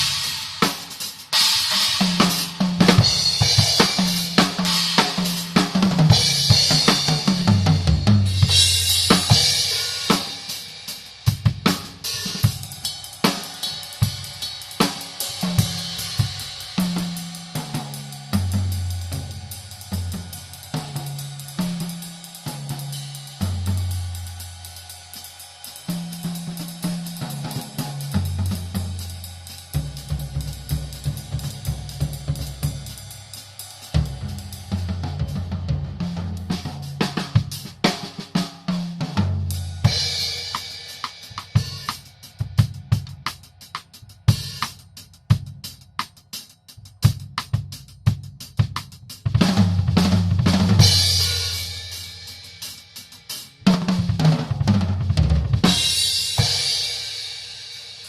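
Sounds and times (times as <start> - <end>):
snare drum: 0.0 - 24.1, 33.7 - 56.7
tom drum fills: 0.0 - 24.4, 25.1 - 46.1, 47.0 - 57.0
hi-hat strokes: 0.0 - 35.4, 39.5 - 49.4, 50.4 - 53.7
bass drum: 1.8 - 10.2, 15.4 - 21.8, 27.0 - 33.1, 34.0 - 38.0, 47.0 - 52.2, 53.7 - 56.7.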